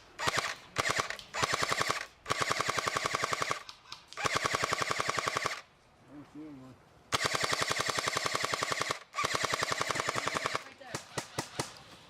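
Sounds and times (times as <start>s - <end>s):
airsoft rifle firing full auto: 0.2s - 3.6s, 4.2s - 5.6s, 7.1s - 11.7s.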